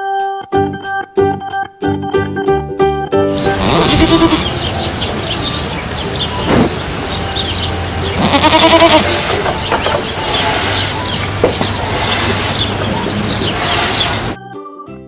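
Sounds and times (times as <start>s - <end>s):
goat bleating: 3.4s - 12.6s.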